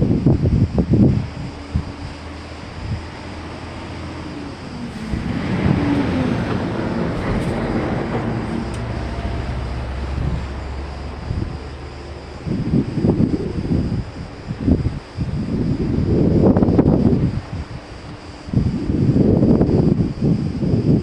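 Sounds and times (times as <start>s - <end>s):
wave breaking and washing up: 0.0s - 11.4s
wind rumbling on microphone: 0.0s - 21.0s.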